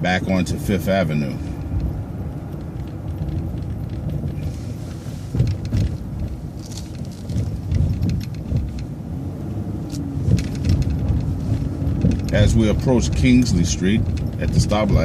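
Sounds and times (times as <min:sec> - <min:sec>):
bus engine and road rumble: 0:00.0 - 0:15.0
short rattles and knocks: 0:01.5 - 0:09.0, 0:09.8 - 0:15.0.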